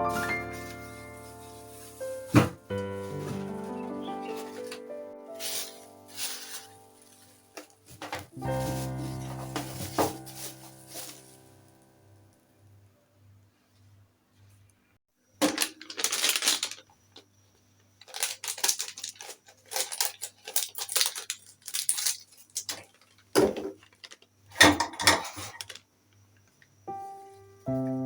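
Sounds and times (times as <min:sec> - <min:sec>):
background music: 0:00.0 - 0:07.5, 0:08.4 - 0:12.2
household objects clattering: 0:00.4 - 0:11.3, 0:18.2 - 0:25.8.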